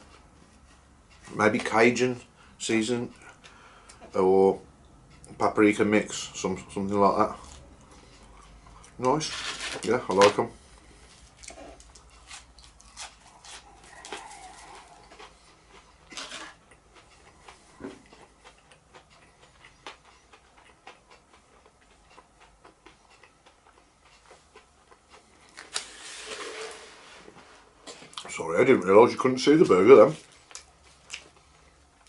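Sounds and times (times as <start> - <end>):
person chewing food: 7.3 - 9.7, 10.7 - 26.6, 30.3 - 32.0.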